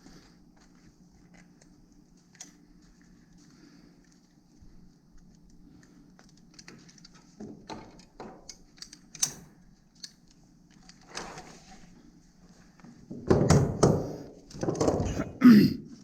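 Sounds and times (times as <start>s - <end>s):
faint steady hum: 0.0s - 16.0s
gear clicking and clinking: 5.2s - 11.1s.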